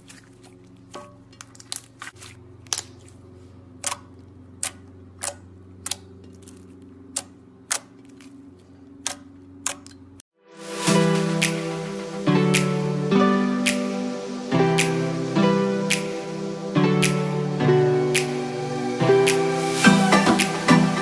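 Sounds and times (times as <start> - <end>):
loud guitar music: 10.6 - 21.0.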